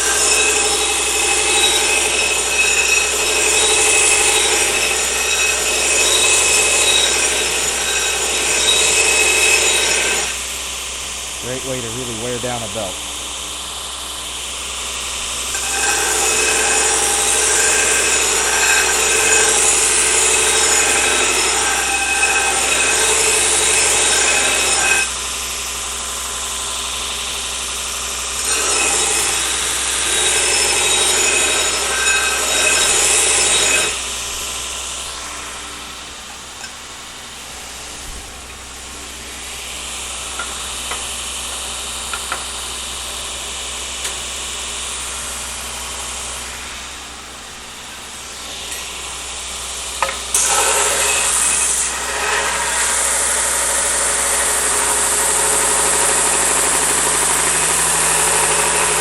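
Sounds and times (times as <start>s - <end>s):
blade grinding on belt: 0.0s - 10.5s, 15.4s - 25.8s, 27.8s - 36.8s, 50.0s - 59.0s
belt grinder motor running: 0.0s - 14.0s, 14.9s - 36.7s, 48.5s - 59.0s.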